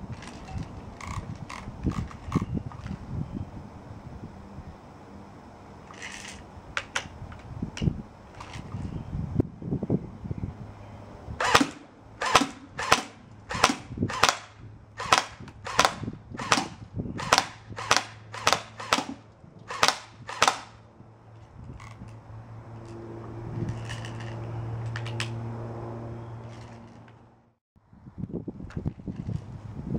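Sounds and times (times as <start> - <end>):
airsoft rifle single shots: 11.4 - 20.8.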